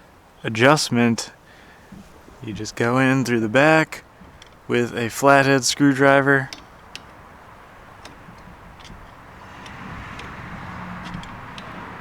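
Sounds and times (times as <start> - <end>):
steady background rumble: 0.0 - 12.0
hand tools clicking: 4.1 - 12.0.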